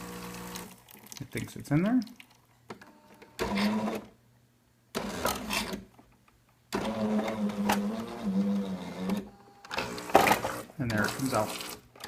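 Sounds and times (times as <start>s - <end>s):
coffee machine motor running: 0.0s - 0.7s.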